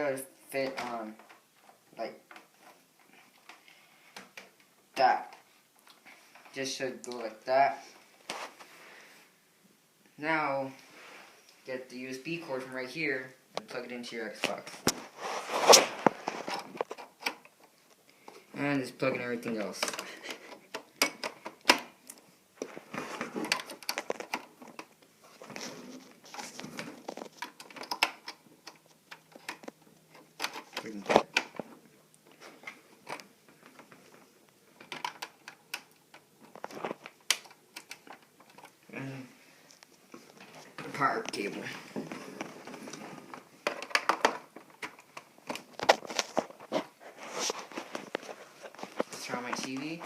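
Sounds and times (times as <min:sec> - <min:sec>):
cords rustling: 0:10.0 - 0:50.0
plastic cable plugs clicking: 0:27.1 - 0:31.7
plastic clicks and knocks: 0:43.3 - 0:46.4.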